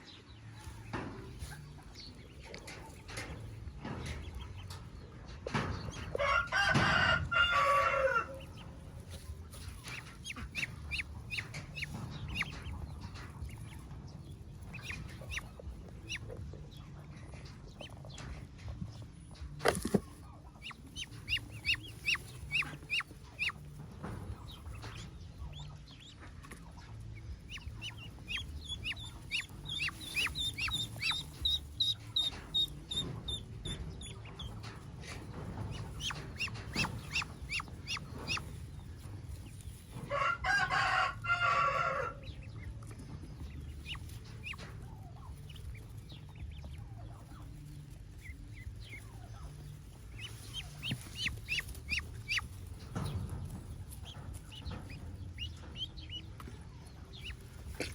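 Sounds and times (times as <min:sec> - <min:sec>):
ducklings peeping: 0:00.0 - 0:57.9
low steady rumble: 0:00.0 - 0:57.9.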